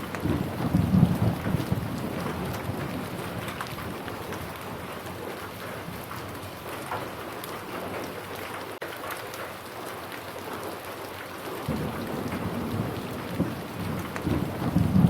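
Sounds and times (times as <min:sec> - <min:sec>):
low rumble of thunder: 0:00.0 - 0:08.1, 0:11.7 - 0:15.0
raindrops ticking: 0:00.0 - 0:15.0
steady rain falling: 0:00.0 - 0:15.0.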